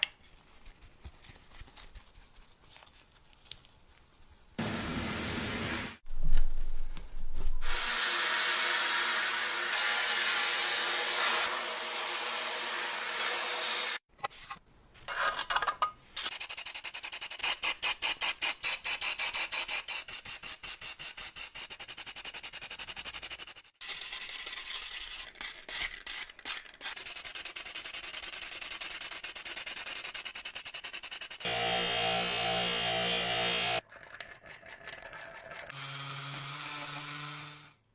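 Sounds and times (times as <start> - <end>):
hand sanding metal: 26.9 - 31.5.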